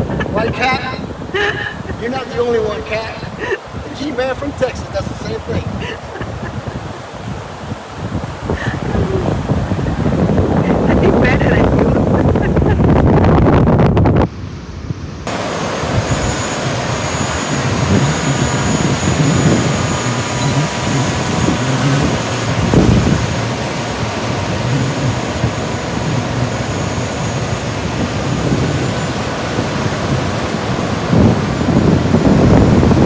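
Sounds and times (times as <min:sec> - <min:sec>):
surf on beach: 0:00.0 - 0:33.0
wind buffeting microphone: 0:00.0 - 0:33.0
faint high whine: 0:15.3 - 0:33.0.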